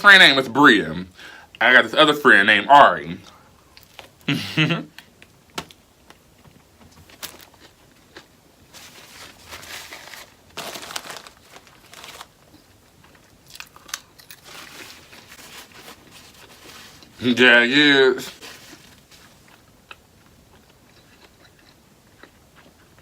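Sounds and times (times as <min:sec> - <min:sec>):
food packaging crinkling: 0:05.0 - 0:17.5, 0:18.1 - 0:21.7
crunchy bites and chewing: 0:07.0 - 0:17.2.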